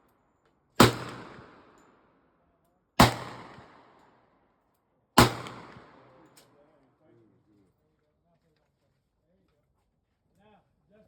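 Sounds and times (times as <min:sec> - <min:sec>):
gunshots echoing: 0:00.8 - 0:01.7, 0:03.0 - 0:03.9, 0:05.2 - 0:06.3.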